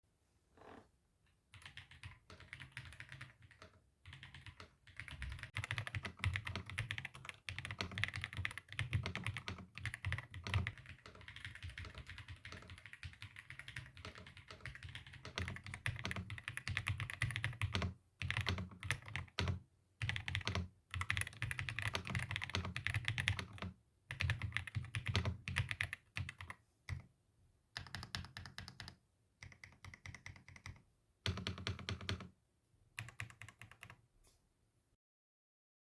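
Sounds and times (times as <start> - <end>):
mechanical keyboard typing: 1.6 - 27.1, 27.8 - 32.3, 33.0 - 34.0.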